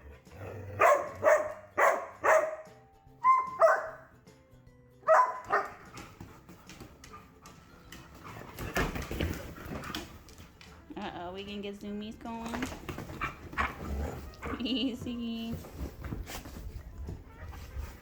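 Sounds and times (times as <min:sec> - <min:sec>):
dog barking: 0:00.8 - 0:04.1, 0:05.0 - 0:06.0
rustling of dogs playing: 0:05.1 - 0:11.6, 0:12.2 - 0:18.0.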